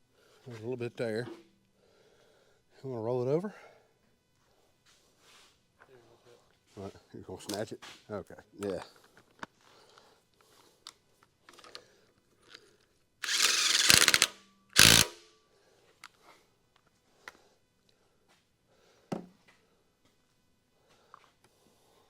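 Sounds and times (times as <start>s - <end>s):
impact wrench rattling: 13.2s - 15.2s
tools clicking and knocking: 13.2s - 15.2s.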